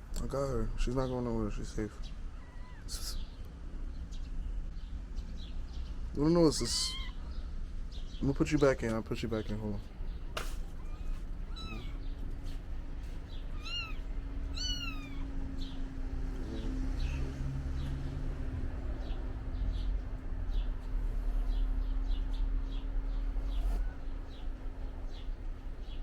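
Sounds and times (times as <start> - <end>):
kittens mewing: 1.9 - 3.4, 6.6 - 7.3, 10.1 - 18.0
faint short squeaks: 10.5 - 12.0.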